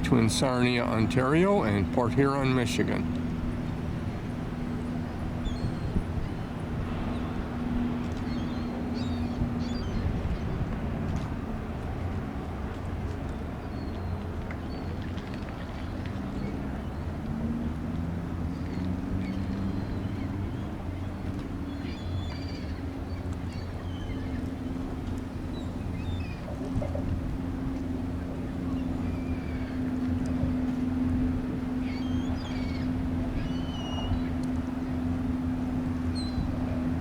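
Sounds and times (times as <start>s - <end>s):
birds chirping: 0.0s - 10.8s, 18.5s - 37.0s
cargo ship rumbling hum: 0.0s - 37.0s.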